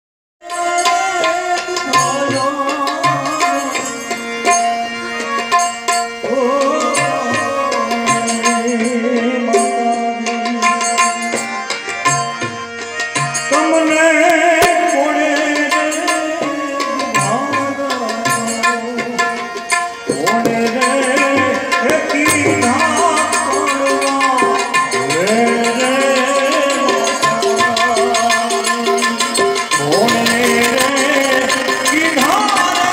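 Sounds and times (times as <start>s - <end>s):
tabla drumming: 0.4s - 32.9s
sustained melody line: 17.2s - 32.9s.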